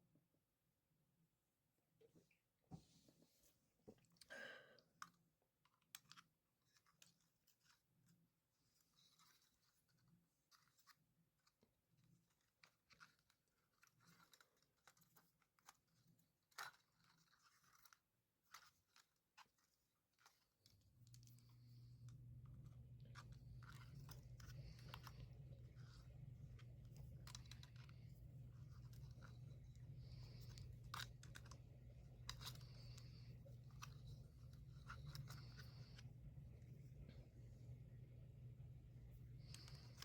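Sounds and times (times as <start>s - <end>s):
low motor hum: 20.9s - 40.0s.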